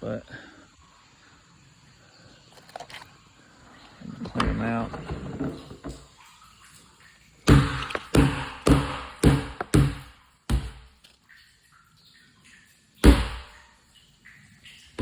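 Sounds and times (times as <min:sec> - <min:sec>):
hollow knocks with ringing tail: 0:07.5 - 0:11.0.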